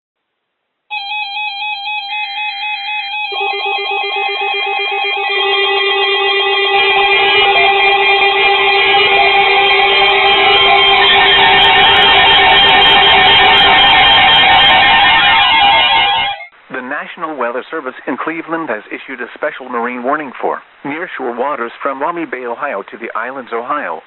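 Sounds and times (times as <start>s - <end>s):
electronic warbling alarm beeps: 1.0s - 16.5s.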